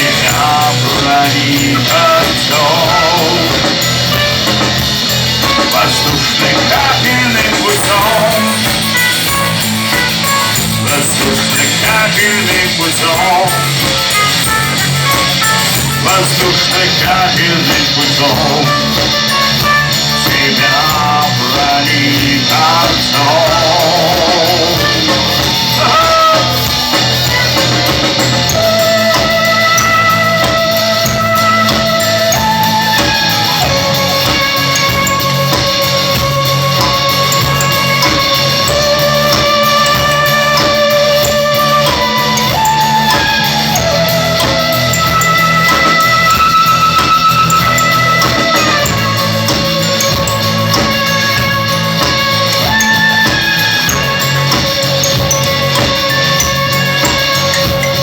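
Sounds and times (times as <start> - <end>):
bass: 0.0 - 58.0
electric guitar melody with vibrato: 0.0 - 58.0
steady drum beat: 0.0 - 58.0.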